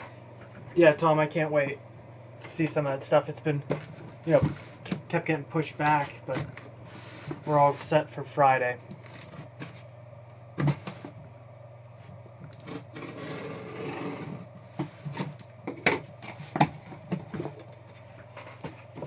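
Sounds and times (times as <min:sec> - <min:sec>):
steady low hum: 0:00.0 - 0:19.0
rubbing and rustling: 0:05.8 - 0:07.9.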